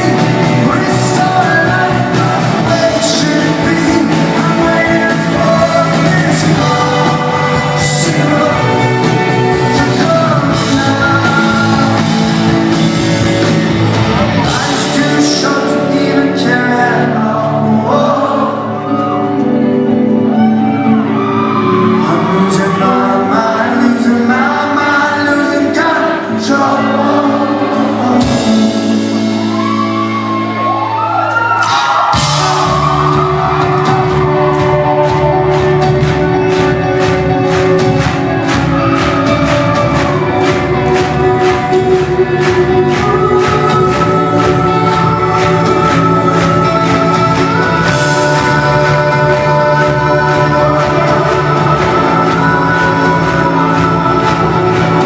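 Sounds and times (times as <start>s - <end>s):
lead vocals: 0.0s - 55.0s
live rock band playing: 0.0s - 55.0s
shouts: 20.3s - 23.4s, 29.4s - 35.8s.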